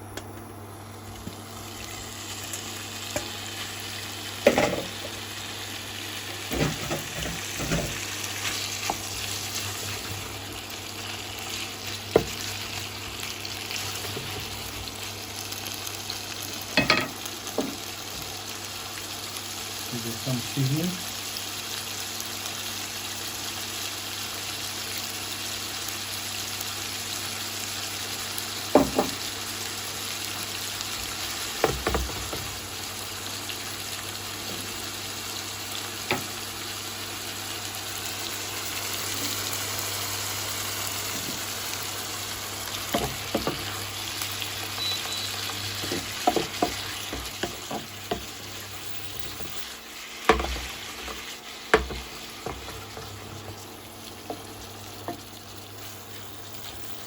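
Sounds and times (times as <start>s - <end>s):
seafood sizzling in a pan: 0.7s - 57.0s
utensil knocking against pan: 45.8s - 48.3s.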